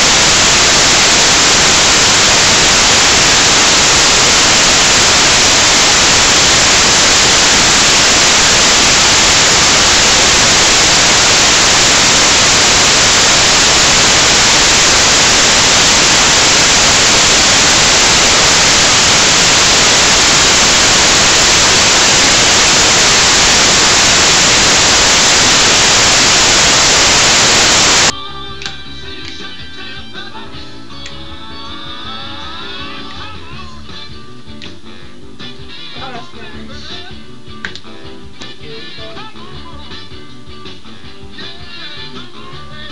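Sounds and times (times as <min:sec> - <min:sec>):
static hiss: 0:00.0 - 0:28.1
rock and roll music with guitar: 0:00.0 - 0:42.9.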